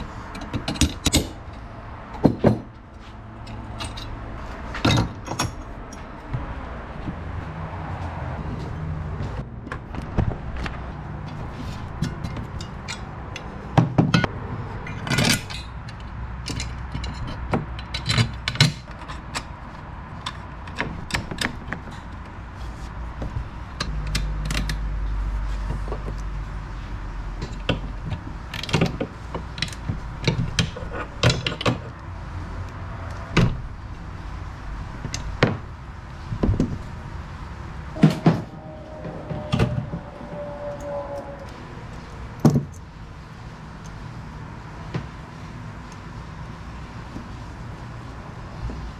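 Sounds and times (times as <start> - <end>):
tools and metal hardware clinking: 0.0 - 6.2, 11.7 - 22.2, 27.4 - 31.9, 42.3 - 42.9
low hum: 36.9 - 43.3.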